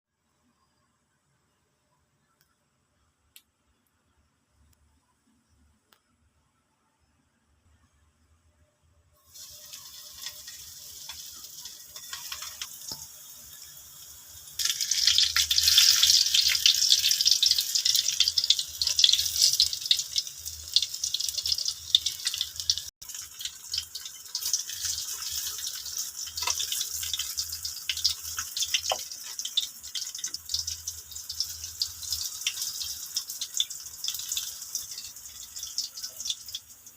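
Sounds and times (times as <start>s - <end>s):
bananas sizzling in frying oil: 9.2s - 36.9s.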